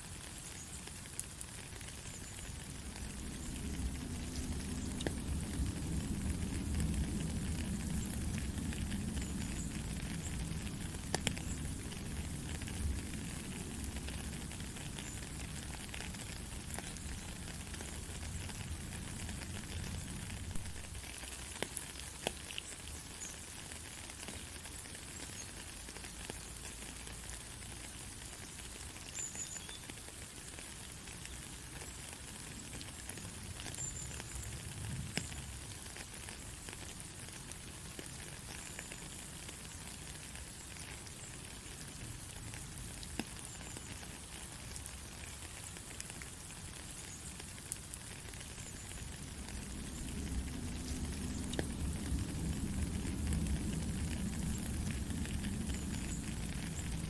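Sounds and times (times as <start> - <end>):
rain hiss: 0.0 - 57.0
faint low rumble: 2.2 - 21.1, 48.4 - 57.0.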